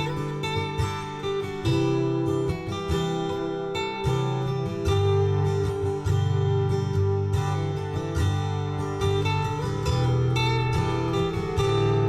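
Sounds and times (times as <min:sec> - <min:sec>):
plucked acoustic guitar music: 0:00.0 - 0:12.0.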